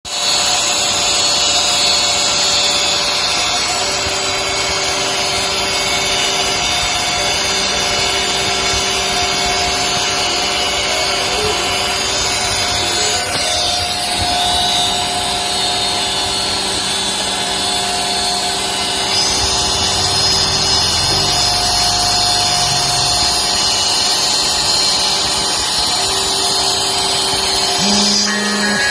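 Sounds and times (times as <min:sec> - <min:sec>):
milling machine whine and hiss: 0:00.1 - 0:28.9
mid-pitched tones: 0:27.2 - 0:28.9.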